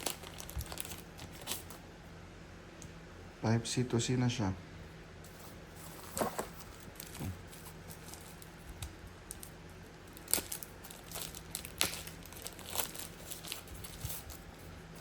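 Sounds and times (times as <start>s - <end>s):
faint packaging rustling: 0.0s - 1.8s, 5.2s - 15.0s.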